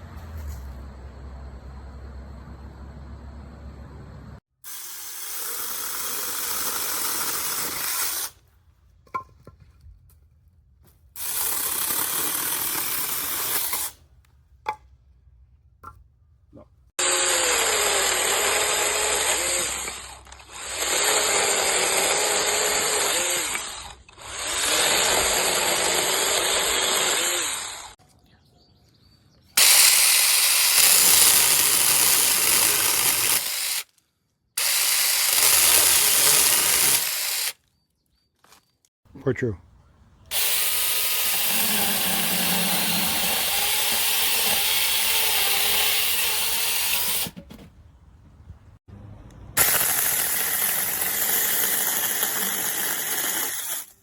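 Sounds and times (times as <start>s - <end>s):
mini chainsaw running: 4.7s - 8.4s, 11.2s - 14.0s, 17.0s - 28.0s, 29.6s - 33.9s, 34.6s - 37.6s, 40.3s - 47.4s, 49.6s - 54.0s.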